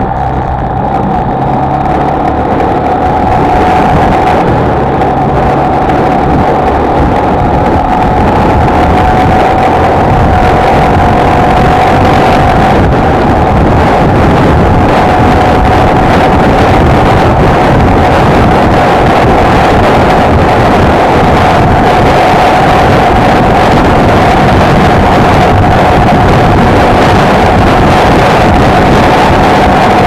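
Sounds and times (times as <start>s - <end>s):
motorcycle engine cruising: 0.0s - 30.0s
wind noise on microphone: 0.0s - 30.0s.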